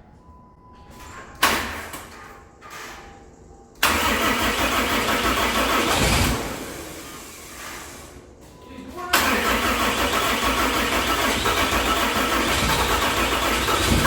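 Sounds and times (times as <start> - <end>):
diesel engine cranking: 3.8 - 8.0, 9.1 - 14.0.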